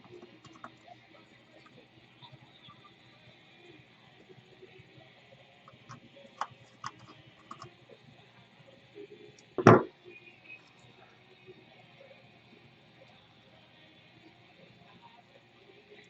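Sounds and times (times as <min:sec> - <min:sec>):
loud knock: 0:09.6 - 0:09.9.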